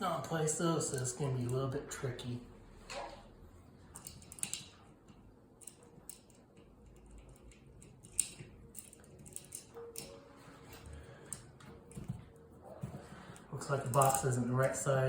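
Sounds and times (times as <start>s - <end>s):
small metal clicks and taps: 3.9s - 10.2s, 13.8s - 14.8s.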